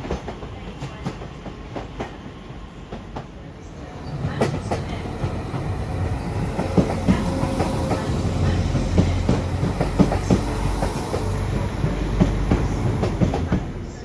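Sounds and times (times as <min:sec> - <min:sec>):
train rumbling on rails: 0:00.0 - 0:14.0
wheels clicking over rail joints: 0:03.7 - 0:14.0.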